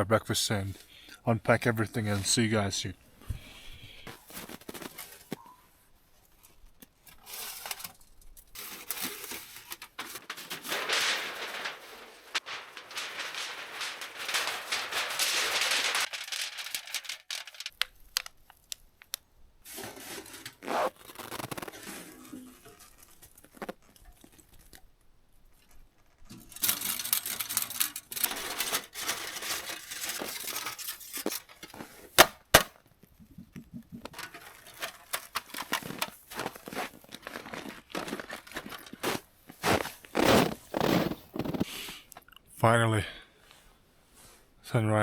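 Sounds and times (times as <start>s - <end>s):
plastic packaging rustling: 3.4s - 5.4s, 7.2s - 18.3s, 19.8s - 24.4s, 26.6s - 32.6s, 34.1s - 41.7s
clicks and knocks: 34.0s - 36.9s.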